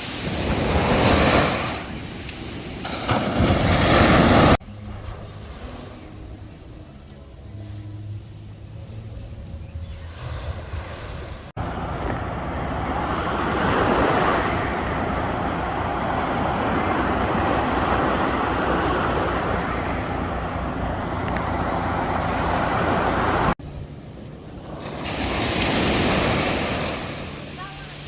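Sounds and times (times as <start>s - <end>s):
ocean surf breaking on a beach: 0.0s - 4.6s, 10.6s - 28.0s.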